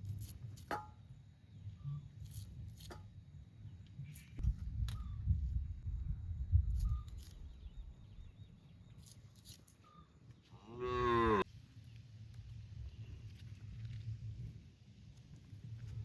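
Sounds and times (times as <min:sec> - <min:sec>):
cow mooing: 0:10.5 - 0:11.4.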